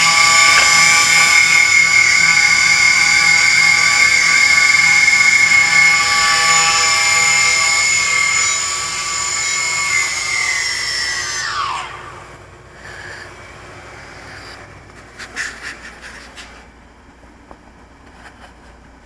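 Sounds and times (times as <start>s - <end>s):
quadcopter motors whining: 0.0s - 13.5s.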